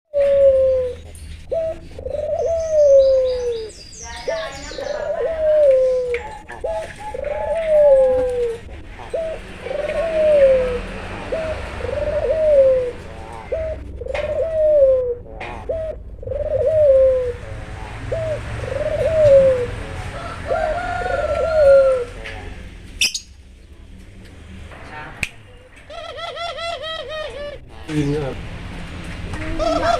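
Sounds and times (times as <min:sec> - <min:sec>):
dove cooing: 0:00.2 - 0:23.2, 0:25.8 - 0:28.2, 0:29.3 - 0:29.9.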